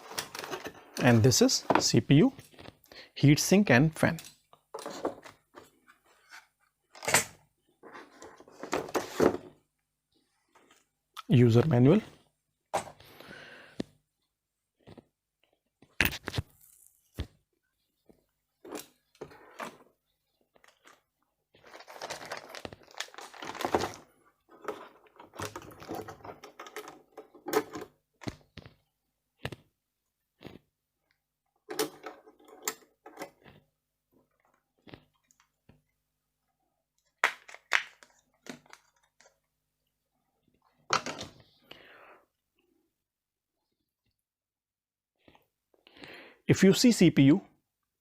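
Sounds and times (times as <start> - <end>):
packaging crinkling and rustling: 20.6 - 26.8
packaging clicks and knocks: 21.6 - 28.8.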